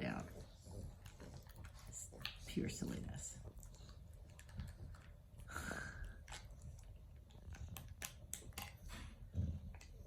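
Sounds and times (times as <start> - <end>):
dogs chewing and mouthing: 0.0 - 10.0.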